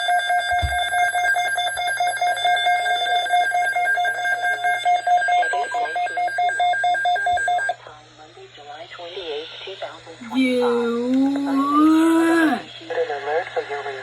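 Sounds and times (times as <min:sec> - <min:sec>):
person speaking: 0:10.2 - 0:12.7.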